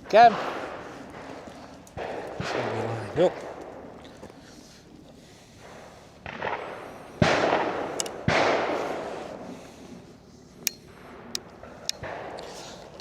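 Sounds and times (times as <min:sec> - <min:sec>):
shotgun shots: 0:00.0 - 0:01.4, 0:02.0 - 0:03.9, 0:06.2 - 0:09.5, 0:10.9 - 0:12.8.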